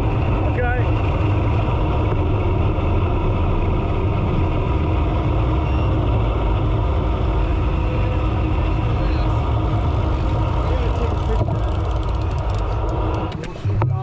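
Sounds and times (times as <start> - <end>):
car engine idling: 0.0 - 14.0
faint high beep: 5.6 - 6.0.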